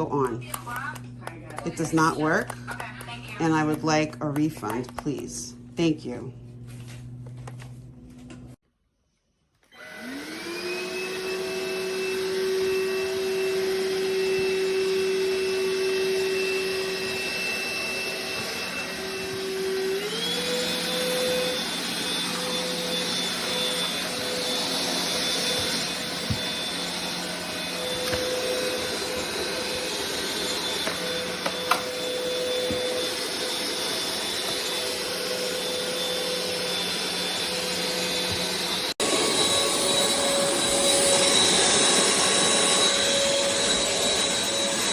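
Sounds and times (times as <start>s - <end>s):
vacuum cleaner motor whine: 0.0s - 8.4s, 9.6s - 44.9s.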